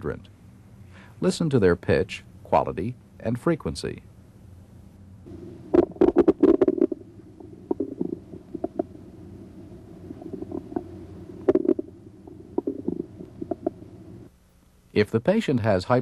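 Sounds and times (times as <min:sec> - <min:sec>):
steady low background: 0:00.0 - 0:15.0
bowel clicks and gurgles: 0:05.7 - 0:09.0, 0:10.1 - 0:13.8.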